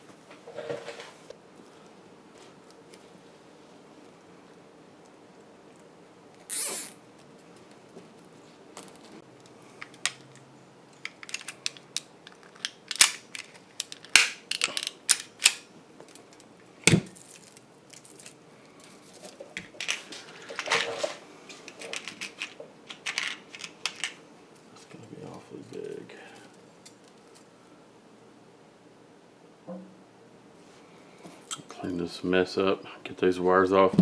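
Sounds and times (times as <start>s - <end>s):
small metal parts clinking: 8.8s - 9.2s, 11.0s - 16.5s, 17.1s - 20.8s.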